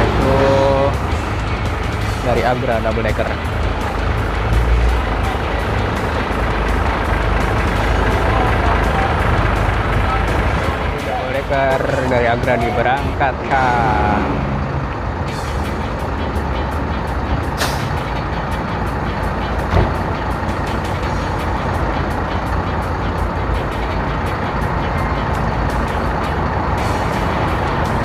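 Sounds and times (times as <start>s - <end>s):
bus engine pulling away: 0.0s - 28.0s
air brake hiss: 17.6s - 17.9s.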